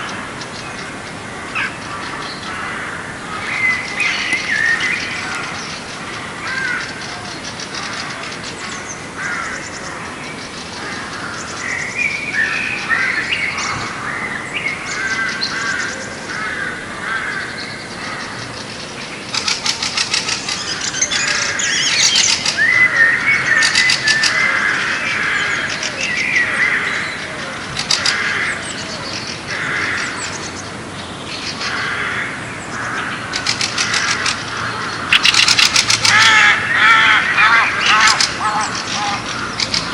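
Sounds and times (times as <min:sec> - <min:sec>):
birds calling and chirping: 0:00.0 - 0:39.9
rapid bird chattering: 0:18.5 - 0:22.8, 0:33.2 - 0:39.9.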